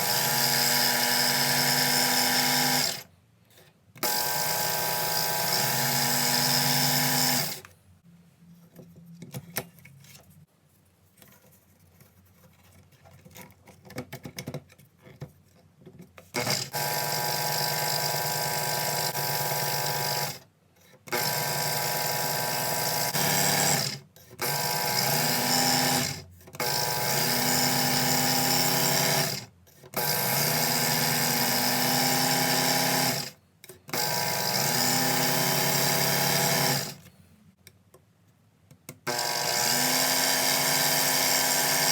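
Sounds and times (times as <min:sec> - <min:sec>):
electric power tool whining: 0:00.0 - 0:03.1, 0:04.0 - 0:07.6, 0:16.3 - 0:20.4, 0:30.0 - 0:37.0, 0:39.1 - 0:41.9.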